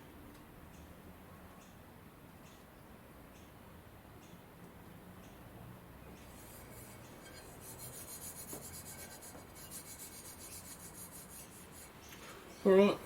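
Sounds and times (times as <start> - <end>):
hand file rasping on steel: 6.3 - 12.0.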